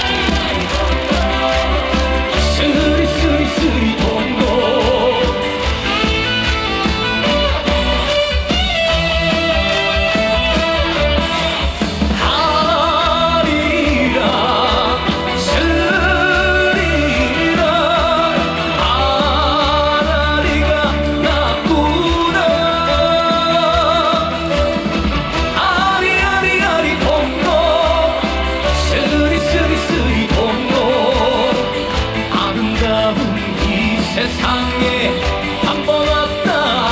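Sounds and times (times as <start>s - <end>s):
trot song over loudspeakers: 0.0s - 36.9s.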